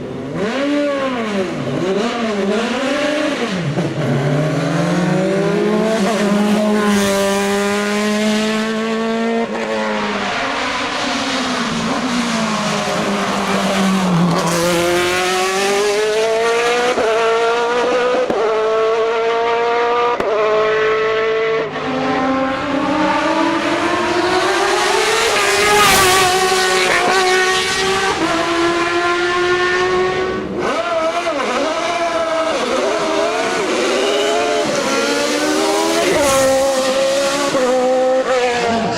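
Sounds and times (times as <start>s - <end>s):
race car engine accelerating: 0.1s - 38.9s.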